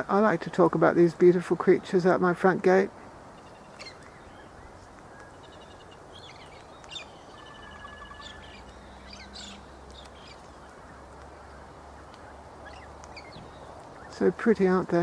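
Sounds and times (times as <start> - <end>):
steady background hiss: 0.0 - 15.0
birds chirping and trilling: 0.3 - 15.0.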